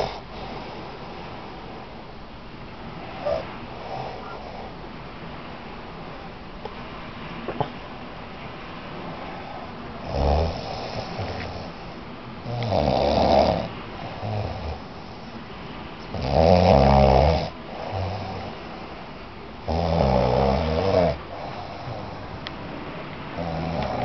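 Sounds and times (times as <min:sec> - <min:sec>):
man snoring heavily: 0:00.0 - 0:00.6, 0:10.0 - 0:11.8, 0:12.5 - 0:14.9, 0:16.1 - 0:18.5, 0:19.6 - 0:22.2, 0:23.4 - 0:24.0
soft breaths: 0:00.0 - 0:24.0.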